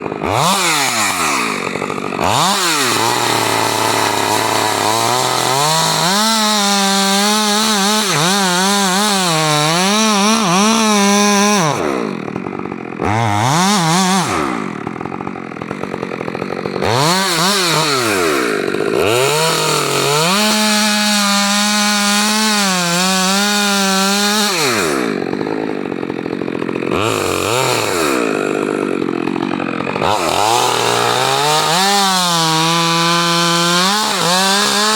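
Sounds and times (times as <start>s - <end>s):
chainsaw cutting and revving: 0.0s - 34.9s.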